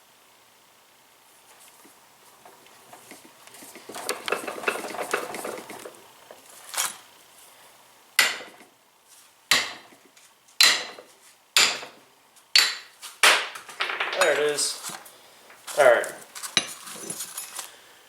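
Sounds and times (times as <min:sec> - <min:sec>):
metal parts clattering and scraping: 0:02.4 - 0:06.0, 0:13.7 - 0:17.7
ringing metal hammer strikes: 0:08.2 - 0:08.5, 0:09.5 - 0:09.8, 0:10.6 - 0:11.0, 0:11.6 - 0:12.0, 0:12.6 - 0:12.9.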